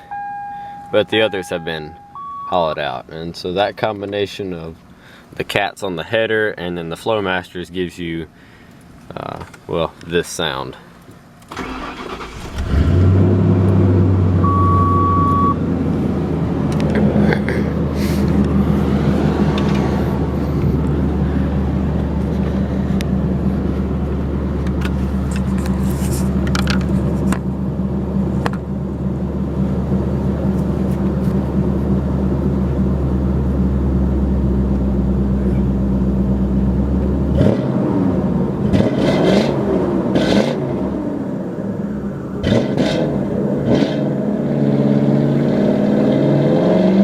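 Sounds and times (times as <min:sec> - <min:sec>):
short beep: 0:00.0 - 0:02.8, 0:14.4 - 0:15.6
car engine starting and idling: 0:00.0 - 0:02.9, 0:11.0 - 0:46.4.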